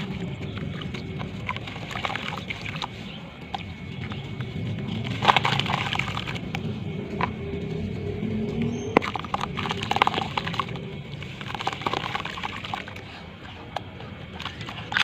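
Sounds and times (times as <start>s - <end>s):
sand clumps crumbling into water: 0.0s - 7.4s, 8.9s - 13.0s.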